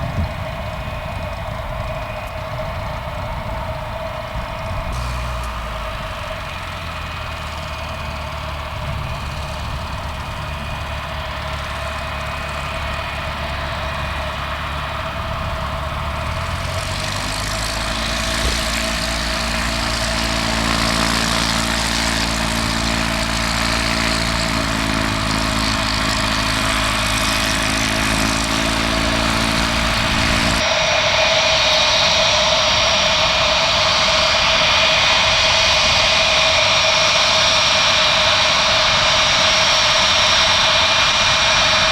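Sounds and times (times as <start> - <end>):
jet engines whining: 0.0 - 41.9
hissing jet noise: 11.2 - 41.9.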